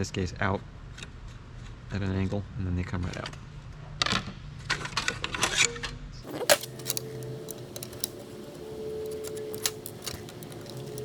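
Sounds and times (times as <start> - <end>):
metal parts clicking and clinking: 6.3 - 11.0.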